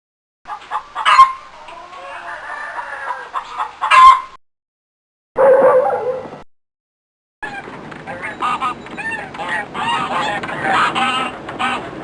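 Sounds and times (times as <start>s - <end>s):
chicken clucking and squawking: 0.5s - 4.4s, 7.4s - 12.0s.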